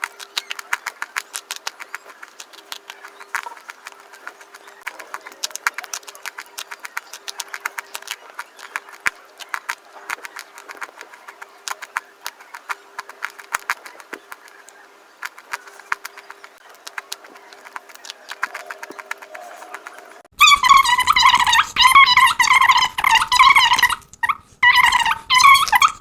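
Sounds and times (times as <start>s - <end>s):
crunchy food chewing: 0.0s - 26.0s.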